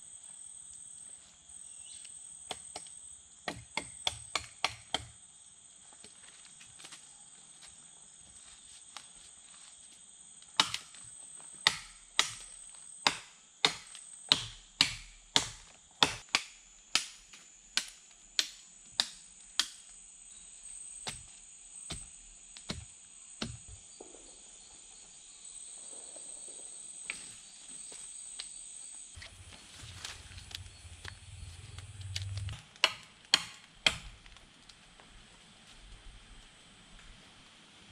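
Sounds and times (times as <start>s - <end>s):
insects buzzing: 0.0s - 34.2s
chopping strikes on wood: 2.5s - 5.1s, 10.6s - 11.0s, 11.6s - 19.9s, 21.0s - 23.8s, 32.3s - 34.3s.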